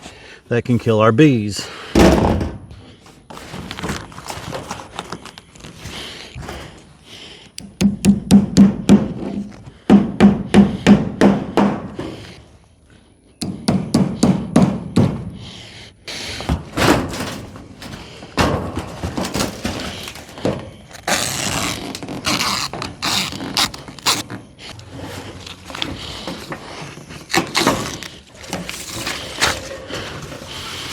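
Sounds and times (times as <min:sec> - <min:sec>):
rustling: 0:02.9 - 0:07.6, 0:16.3 - 0:30.9
scattered knocks: 0:07.6 - 0:11.9
hammer driving nails into wood: 0:07.6 - 0:12.1, 0:13.4 - 0:15.2.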